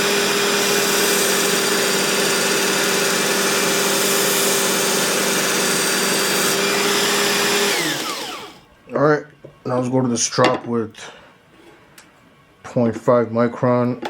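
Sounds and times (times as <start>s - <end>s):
belt sharpener motor hum: 0.0s - 8.6s.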